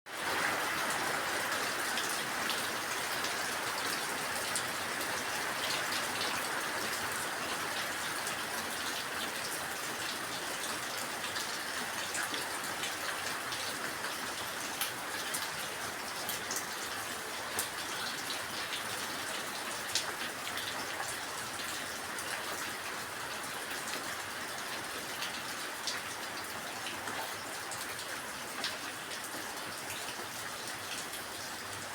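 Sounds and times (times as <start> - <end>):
raindrops ticking and pattering: 0.1 - 31.9.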